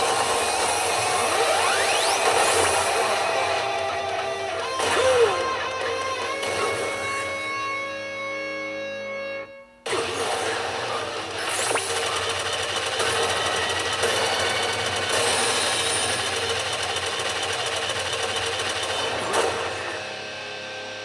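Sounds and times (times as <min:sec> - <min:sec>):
pachinko machine rattling: 0:00.0 - 0:07.4, 0:10.0 - 0:19.8
music: 0:00.0 - 0:12.2, 0:18.7 - 0:21.0.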